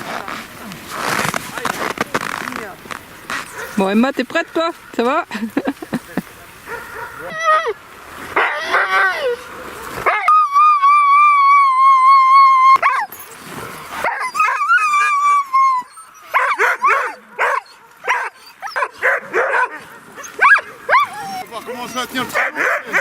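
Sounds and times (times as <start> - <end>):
huskies yipping and barking: 3.2 - 5.8, 6.6 - 23.0
huskies howling: 8.4 - 23.0.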